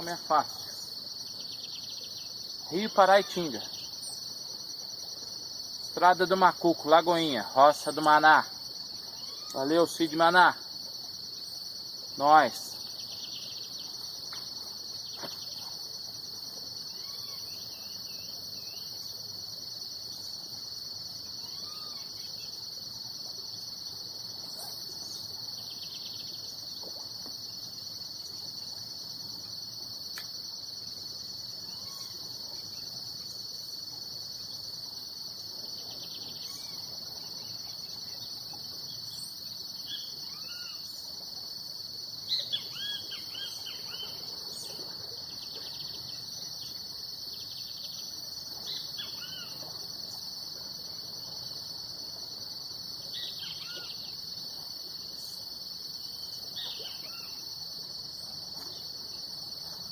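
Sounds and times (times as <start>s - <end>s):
insects buzzing: 0.0s - 59.9s
faint bird chirps: 9.0s - 9.7s, 16.9s - 19.0s, 21.4s - 22.5s, 31.7s - 32.9s, 35.8s - 38.3s.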